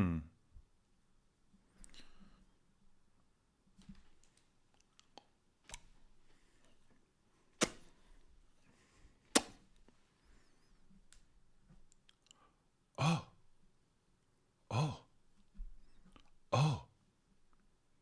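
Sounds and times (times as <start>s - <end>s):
lip clicks: 4.2s - 6.0s, 7.5s - 8.2s, 9.2s - 10.0s, 11.8s - 12.5s
mouth pops: 7.6s - 8.0s, 9.3s - 9.7s.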